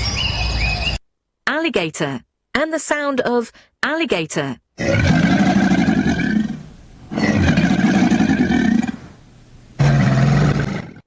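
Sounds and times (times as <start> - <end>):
alligator bellowing: 4.8 - 9.2, 9.8 - 11.0.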